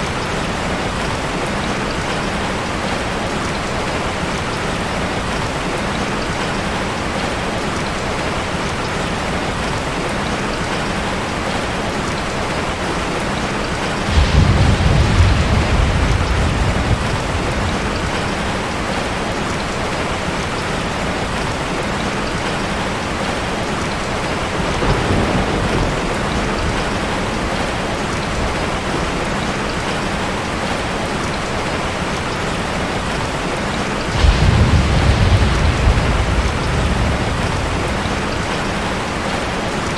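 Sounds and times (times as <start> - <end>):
heavy rain: 0.0 - 39.9
thunder clap: 14.0 - 19.3, 24.6 - 28.8, 34.1 - 39.8.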